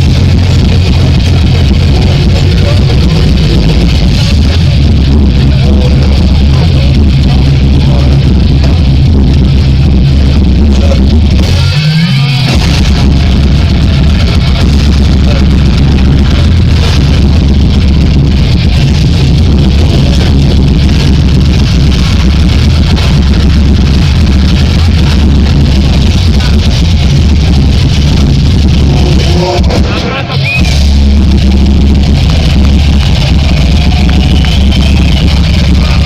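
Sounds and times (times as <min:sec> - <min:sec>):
heavy metal band playing: 0:00.0 - 0:36.0.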